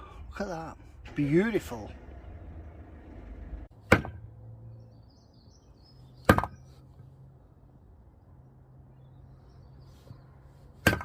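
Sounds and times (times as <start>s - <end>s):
axe chopping hard wood: 3.8s - 4.2s, 6.2s - 6.6s, 10.8s - 11.0s.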